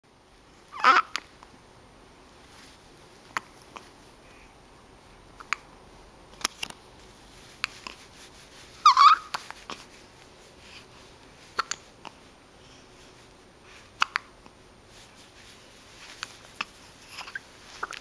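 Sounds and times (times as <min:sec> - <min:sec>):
dog whimper: 0:08.8 - 0:09.3.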